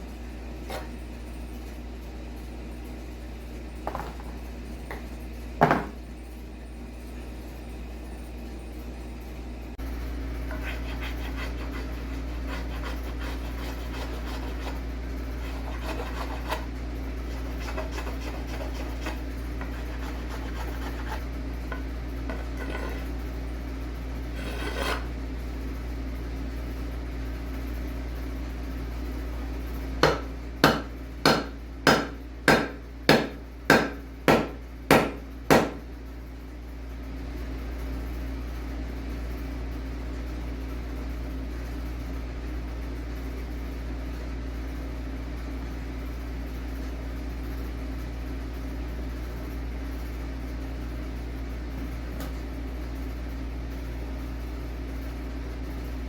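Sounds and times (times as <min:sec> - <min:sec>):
hand tools scraping wood: 0:10.5 - 0:14.8, 0:15.4 - 0:16.7, 0:17.3 - 0:21.2, 0:22.3 - 0:23.1, 0:24.4 - 0:25.1
sharp hammer strikes: 0:30.0 - 0:35.8.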